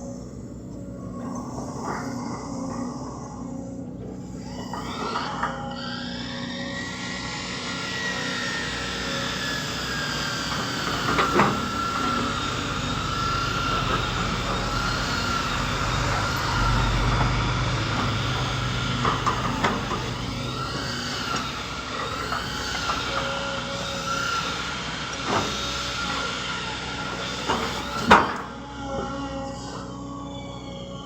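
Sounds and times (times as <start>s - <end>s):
excavator diesel engine running: 0.0s - 31.0s
hydraulic whine: 0.0s - 31.0s.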